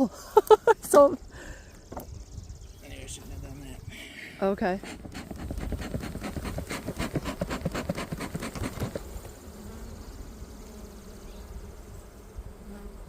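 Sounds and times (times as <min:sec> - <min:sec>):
bees buzzing: 0:04.0 - 0:13.0
rapid irregular knocking and rustling: 0:04.8 - 0:09.0.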